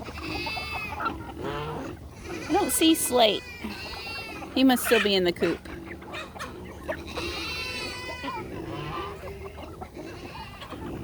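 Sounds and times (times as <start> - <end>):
chickens clucking: 0.0 - 11.0
goat bleating: 2.3 - 5.1, 7.1 - 9.4, 10.0 - 10.8.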